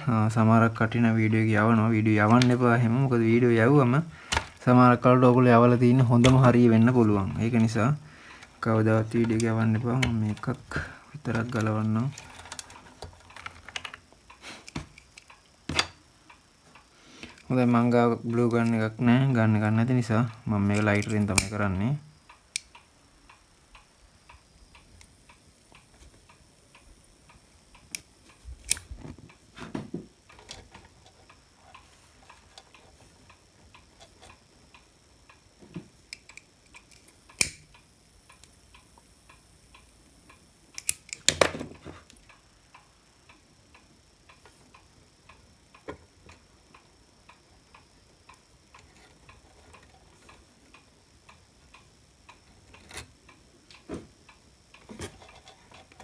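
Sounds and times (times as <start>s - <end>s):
faint steady ticking: 0.0s - 56.0s
tools and parts clicking: 4.3s - 4.7s, 8.4s - 16.0s, 20.6s - 21.6s, 36.1s - 37.8s, 40.8s - 42.2s, 54.8s - 56.0s.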